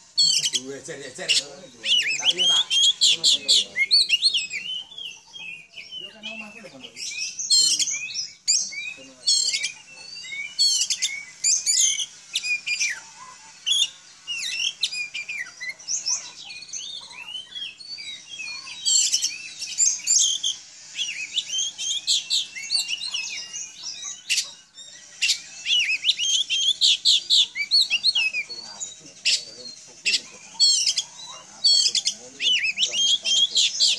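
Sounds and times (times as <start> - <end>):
songbird singing: 0.0 - 33.9.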